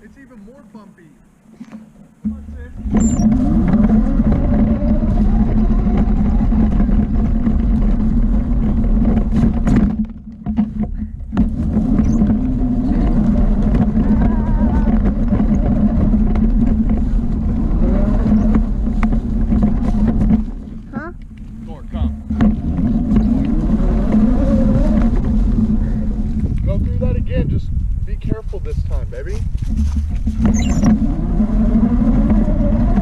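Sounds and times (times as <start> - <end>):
atv engine running: 1.3 - 33.0.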